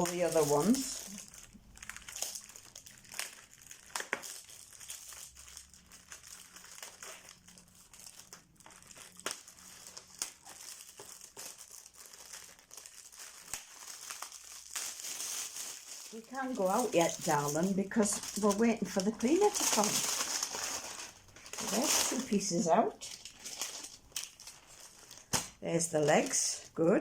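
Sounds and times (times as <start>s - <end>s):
packaging crinkling: 0.0s - 26.8s.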